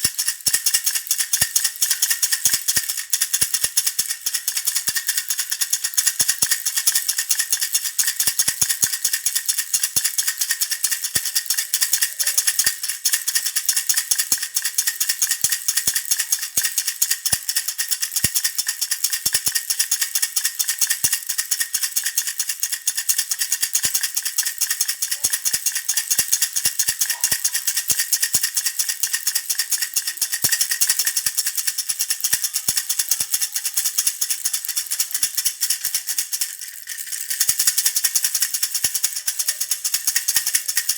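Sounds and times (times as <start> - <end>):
toy rattle shaken: 0.0 - 40.9.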